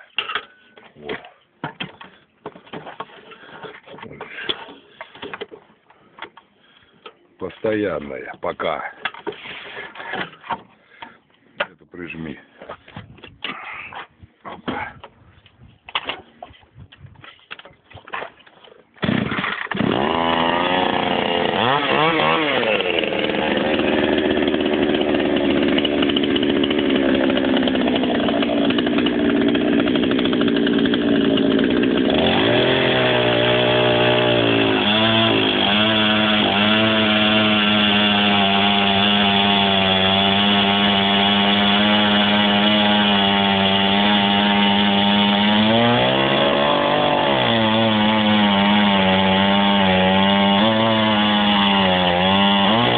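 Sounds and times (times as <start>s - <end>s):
chainsaw cutting log: 19.0s - 52.9s.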